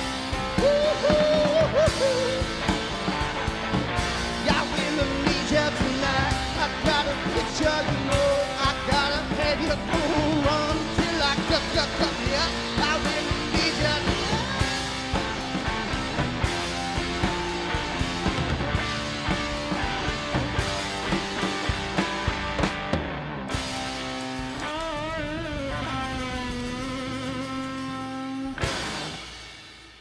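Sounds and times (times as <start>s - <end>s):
live rock band: 0.0s - 30.0s
person singing: 0.2s - 2.8s, 4.4s - 15.7s
electric guitar bending notes: 9.4s - 29.6s.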